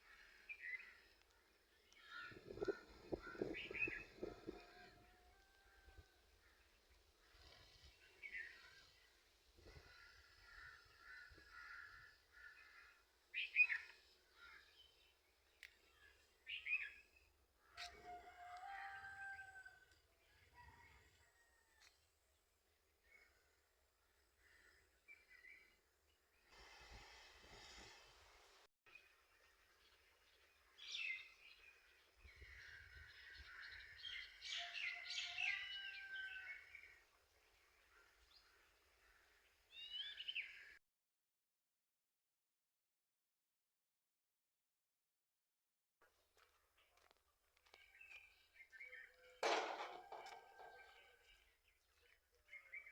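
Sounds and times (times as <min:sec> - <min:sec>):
birds chirping: 0:00.1 - 0:05.2.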